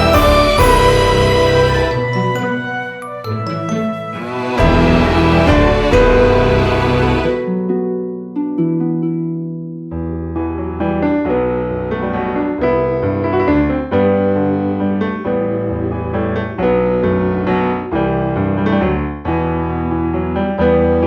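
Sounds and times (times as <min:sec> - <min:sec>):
piano melody: 0:00.0 - 0:21.0
steady bass line: 0:04.6 - 0:07.4.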